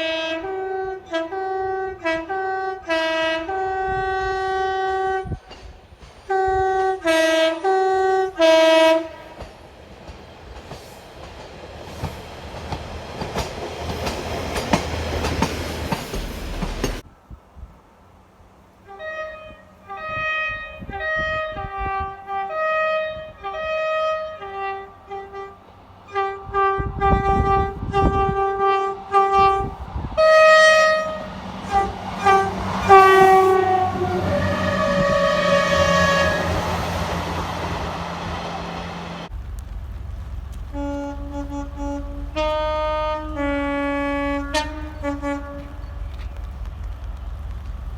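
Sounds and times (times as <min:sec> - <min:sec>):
train horn blasts: 0:00.0 - 0:09.6, 0:18.8 - 0:38.0, 0:40.6 - 0:46.5
passing train rushing: 0:00.0 - 0:47.9.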